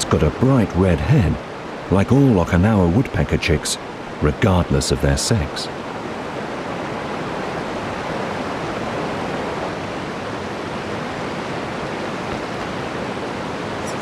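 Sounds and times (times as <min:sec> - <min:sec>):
river rushing: 0:00.0 - 0:14.0.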